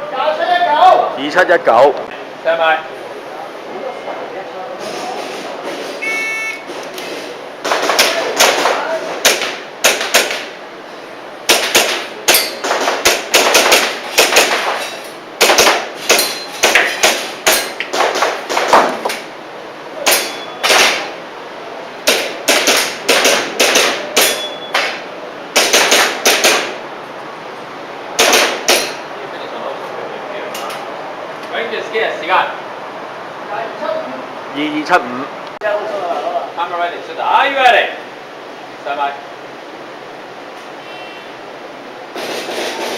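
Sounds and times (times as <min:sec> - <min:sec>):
airsoft pistol shots: 0:07.6 - 0:10.5, 0:11.5 - 0:14.8, 0:15.4 - 0:19.2, 0:20.0 - 0:21.1, 0:22.0 - 0:25.0, 0:25.6 - 0:26.8, 0:28.2 - 0:29.0.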